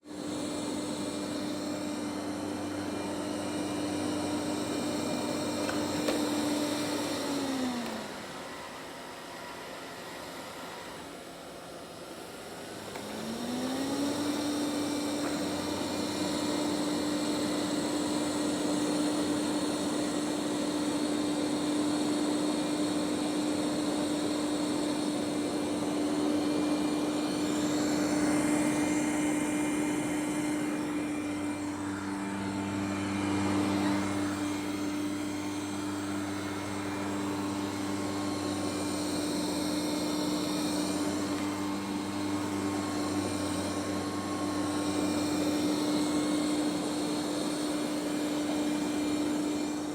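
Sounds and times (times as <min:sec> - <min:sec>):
robot vacuum cleaner running: 0:00.0 - 0:49.9.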